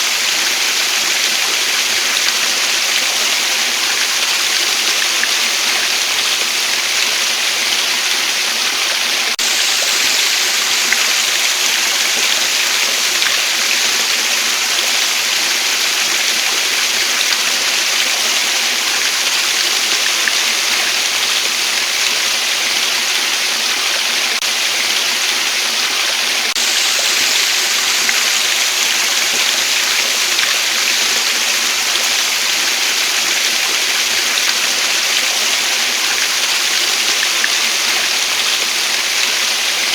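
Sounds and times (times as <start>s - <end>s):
waterfall rushing: 0.0s - 24.0s, 24.6s - 39.9s.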